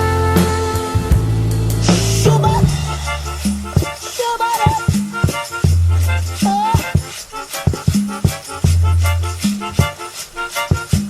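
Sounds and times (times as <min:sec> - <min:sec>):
deep sustained bass note: 0:00.0 - 0:04.0
instrumental music with steady beat: 0:00.0 - 0:11.0
shaker-like percussion: 0:00.0 - 0:11.0.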